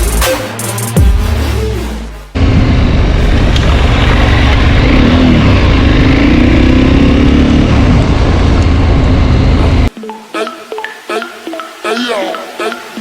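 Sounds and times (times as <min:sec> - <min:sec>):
motorcycle engine running: 0:02.4 - 0:09.9.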